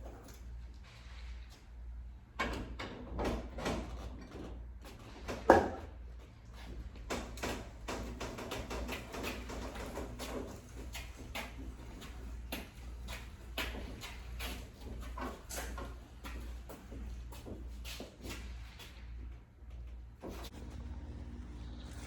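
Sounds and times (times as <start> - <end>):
steady low hum: 8.8 - 22.0.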